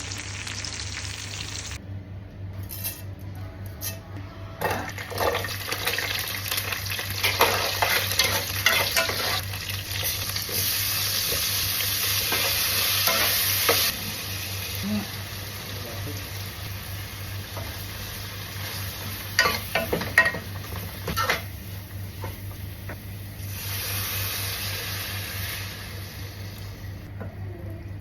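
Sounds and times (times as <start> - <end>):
food sizzling in hot oil: 0.0 - 1.8, 5.4 - 21.5, 23.3 - 27.0.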